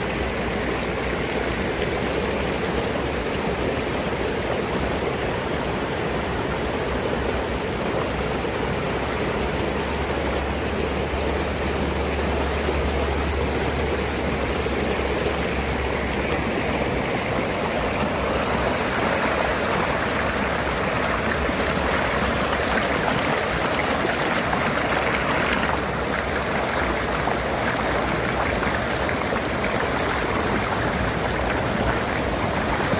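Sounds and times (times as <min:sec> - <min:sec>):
river water rushing: 0:00.0 - 0:32.9.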